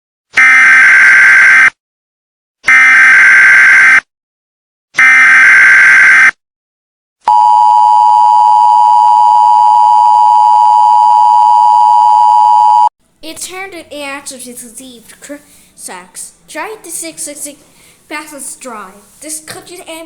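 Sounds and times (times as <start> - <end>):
two-tone attention signal: 7.3 - 12.9.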